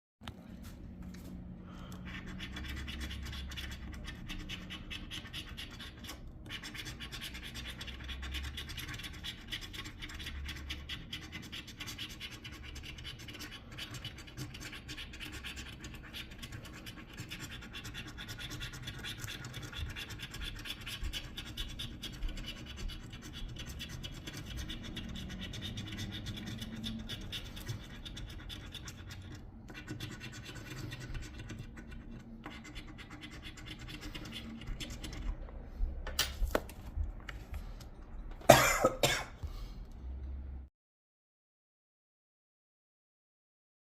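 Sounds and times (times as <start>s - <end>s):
scratching lottery ticket: 2.0s - 35.4s.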